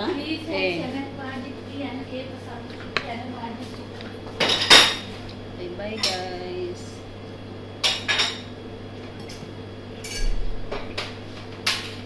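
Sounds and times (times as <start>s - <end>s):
dishes and cutlery clinking: 4.4s - 5.1s.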